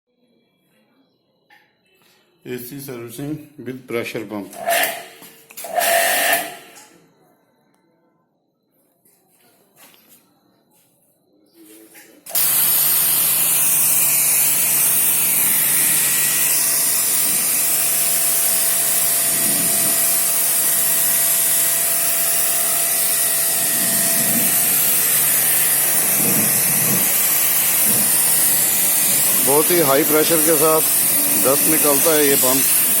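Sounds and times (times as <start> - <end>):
pump humming: 12.3 - 33.0
water jet hissing: 12.3 - 33.0.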